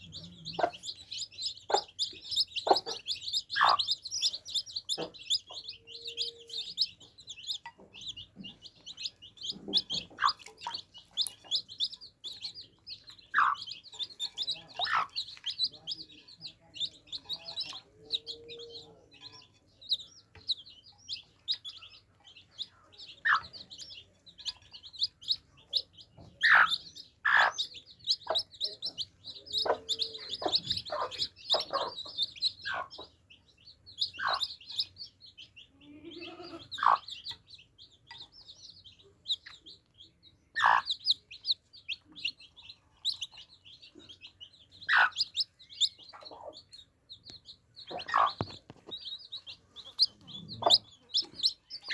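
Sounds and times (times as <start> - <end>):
low clucks: 0.0 - 20.6, 23.2 - 33.2, 43.0 - 51.9
baby chicks peeping: 0.0 - 51.9.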